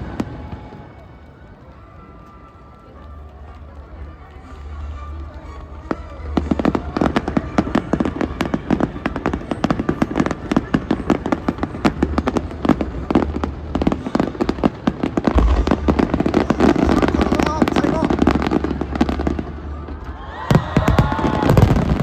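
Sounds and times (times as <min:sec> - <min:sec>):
fireworks bursts: 0:00.0 - 0:22.0
deep firework boom: 0:15.3 - 0:19.6.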